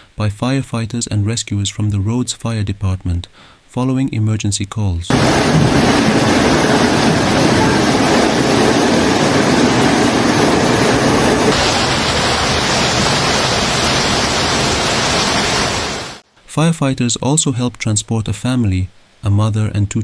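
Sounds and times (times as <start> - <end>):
floodwater rushing: 5.1 - 16.2.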